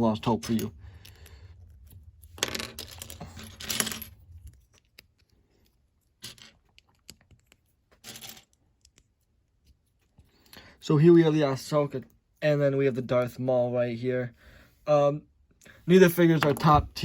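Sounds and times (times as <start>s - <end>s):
plastic pieces clicking and clattering: 6.2s - 9.0s.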